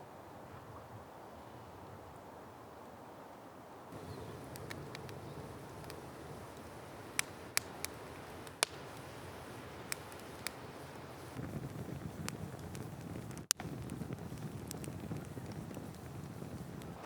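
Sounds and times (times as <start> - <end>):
wood fire crackling: 3.9 - 17.0
steady low rumble: 4.0 - 17.0.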